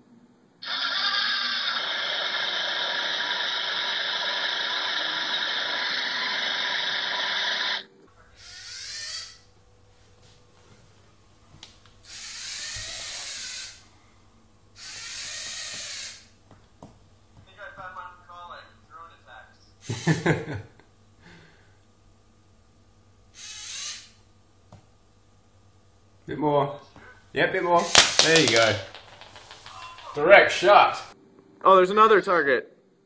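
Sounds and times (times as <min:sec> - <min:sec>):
robot motors whirring: 0:00.6 - 0:07.8, 0:23.4 - 0:24.2.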